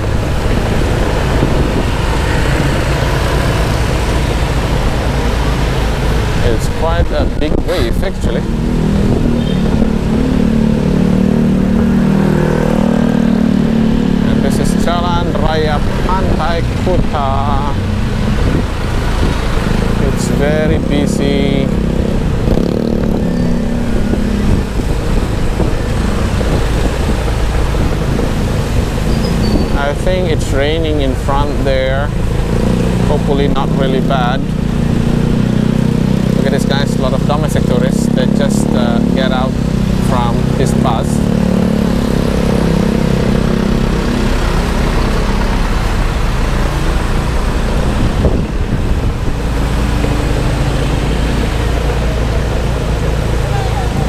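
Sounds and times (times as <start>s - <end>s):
wind rumble on microphone: 0.0s - 37.9s, 39.2s - 54.0s
motorbike engine hum: 0.0s - 54.0s
road traffic: 0.0s - 54.0s.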